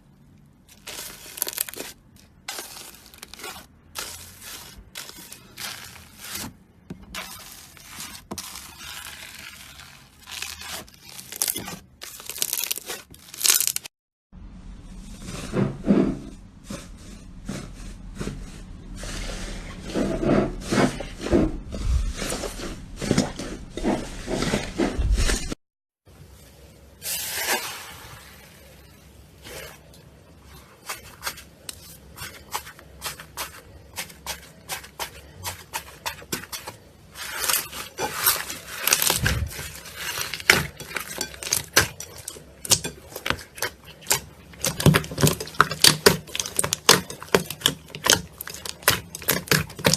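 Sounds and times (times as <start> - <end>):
slime squelching by hand: 0.1 - 13.9, 27.0 - 49.9.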